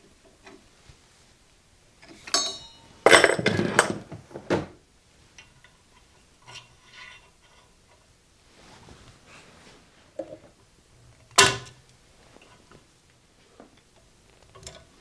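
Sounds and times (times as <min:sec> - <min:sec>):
metal parts clinking and clattering: 0:02.4 - 0:04.2.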